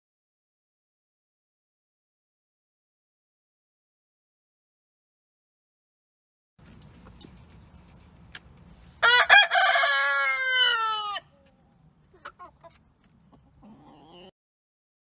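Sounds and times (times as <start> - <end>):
rooster crowing: 9.0 - 11.4.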